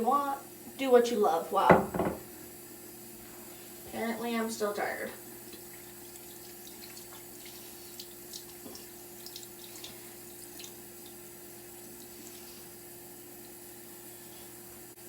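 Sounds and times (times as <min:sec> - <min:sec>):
faint steady hum: 0:00.0 - 0:15.0
tap water running into sink: 0:01.7 - 0:02.4, 0:05.5 - 0:12.2.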